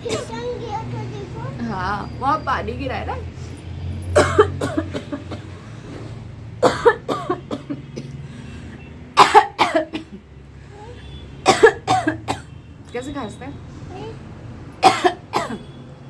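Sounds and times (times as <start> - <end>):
woman coughing: 0.0 - 0.3, 4.2 - 5.5, 6.6 - 8.2, 9.2 - 10.2, 11.4 - 12.6, 14.8 - 15.7.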